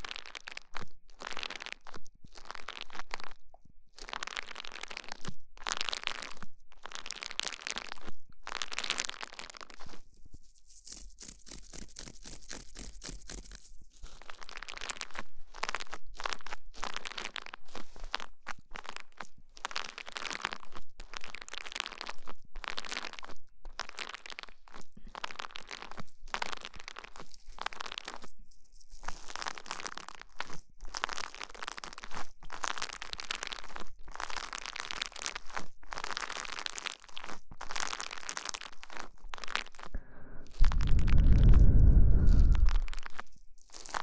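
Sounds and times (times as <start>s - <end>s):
close crinkling and crunching: 25.0s - 44.0s.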